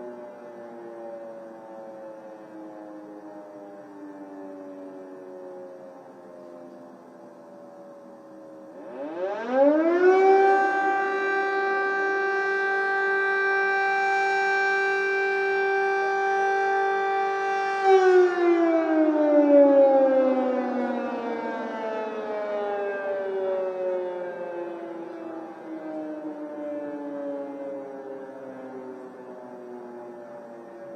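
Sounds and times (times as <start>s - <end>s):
air-raid siren wailing: 0.0s - 30.9s.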